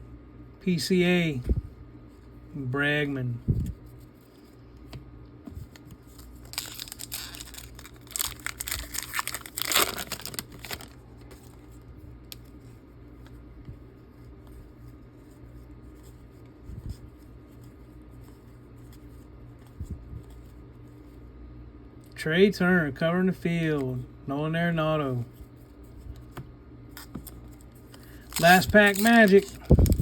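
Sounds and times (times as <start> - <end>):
faint handling sounds: 3.3 - 21.3, 25.1 - 30.0
foil wrapper tearing and crinkling: 6.0 - 11.7, 27.2 - 30.0.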